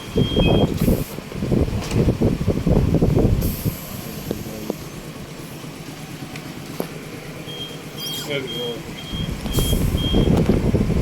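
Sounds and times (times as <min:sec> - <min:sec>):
vehicle rumble: 0:00.0 - 0:11.0
air hissing: 0:00.6 - 0:01.3, 0:03.2 - 0:05.6, 0:09.4 - 0:10.3.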